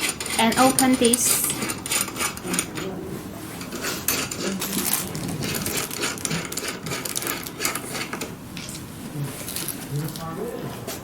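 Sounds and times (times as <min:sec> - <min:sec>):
machine parts clicking and rattling: 0:00.0 - 0:02.9, 0:03.6 - 0:08.8.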